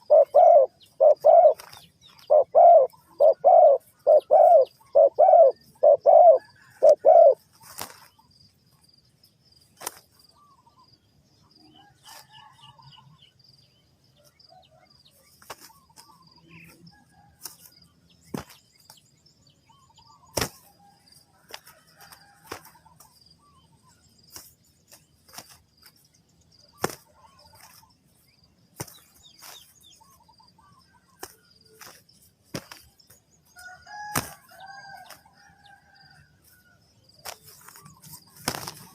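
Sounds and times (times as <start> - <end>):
dove cooing: 0.0 - 7.9
faint bird chirps: 0.0 - 38.9.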